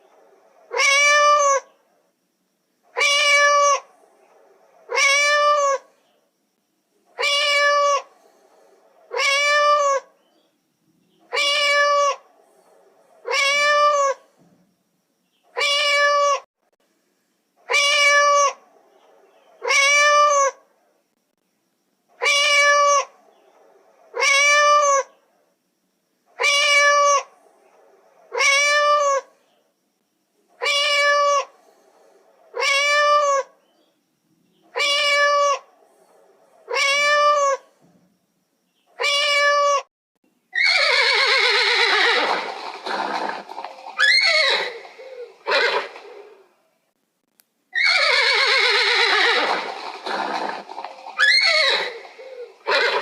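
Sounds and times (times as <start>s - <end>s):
cat meowing: 0.7s - 1.6s, 3.0s - 3.9s, 7.2s - 8.1s, 9.1s - 10.1s, 11.3s - 12.2s, 13.2s - 14.2s, 15.6s - 16.4s, 17.7s - 18.6s, 22.2s - 23.1s, 26.4s - 27.3s, 30.6s - 31.5s, 32.6s - 33.5s, 34.7s - 35.7s, 36.7s - 37.6s, 39.0s - 39.9s
horse whinnying: 40.6s - 46.4s, 47.8s - 53.0s.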